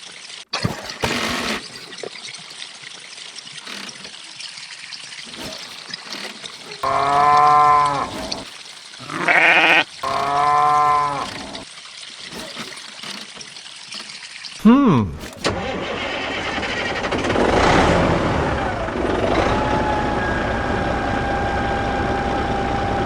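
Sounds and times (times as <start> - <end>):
farm animal calling: 6.7 - 11.6.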